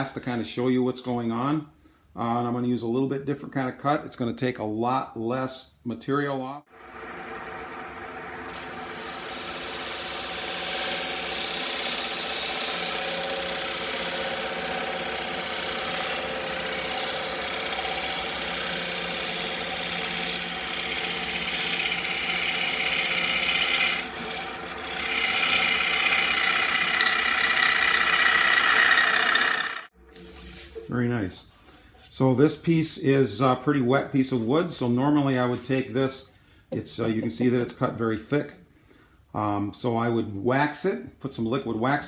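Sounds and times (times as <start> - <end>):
wood lathe hum: 6.7 - 29.9
gouge scraping wood: 8.6 - 29.9.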